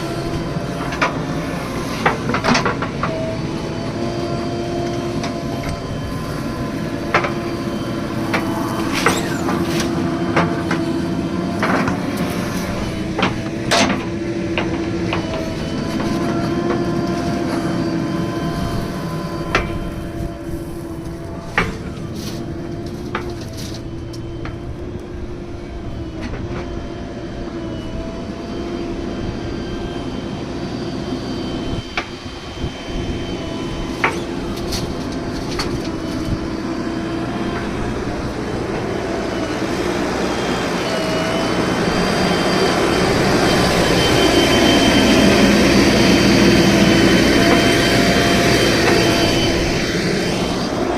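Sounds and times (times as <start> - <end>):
diesel engine running: 0.0 - 50.9.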